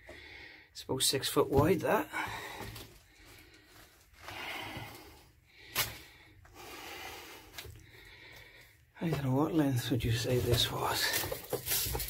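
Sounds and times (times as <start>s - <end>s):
man breathing hard: 0.0s - 0.8s, 2.1s - 9.0s.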